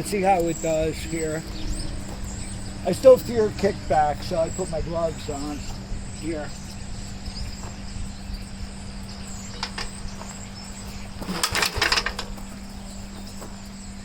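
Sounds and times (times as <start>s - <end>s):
engine cranking without starting: 9.0s - 13.9s
starter rope pull: 10.9s - 12.6s.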